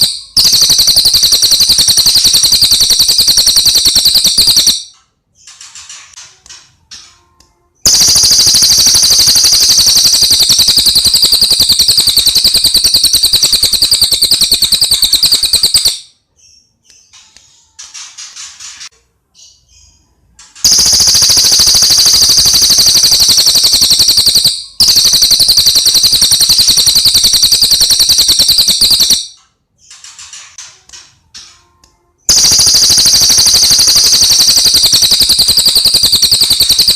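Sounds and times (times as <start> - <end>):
songbird rattling trills: 7.9 - 16.0, 20.6 - 29.2.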